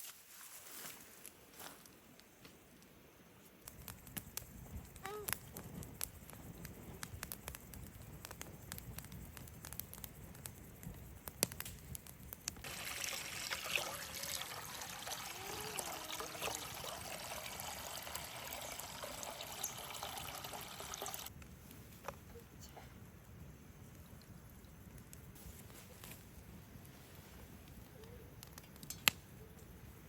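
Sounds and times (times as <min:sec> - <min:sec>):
water trickling: 0:12.6 - 0:21.3.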